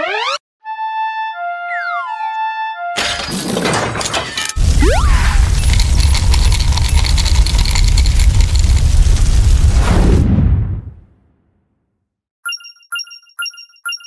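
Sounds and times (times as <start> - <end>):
synth tune with falling glide: 0.0 - 2.9
crash shattering and clattering: 3.0 - 4.7, 5.4 - 9.5
heavy rumble: 4.6 - 11.1.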